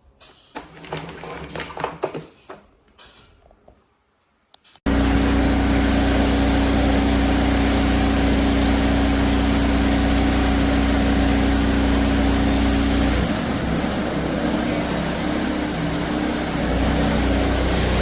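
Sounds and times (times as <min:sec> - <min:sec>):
vacuum cleaner running: 0:04.9 - 0:18.0.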